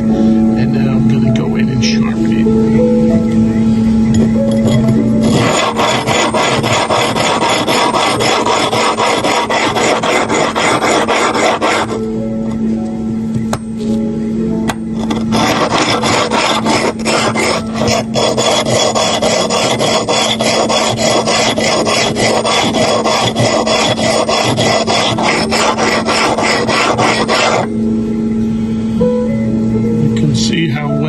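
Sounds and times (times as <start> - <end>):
blade scraping on sharpening plate: 4.2 - 12.0, 15.0 - 27.7.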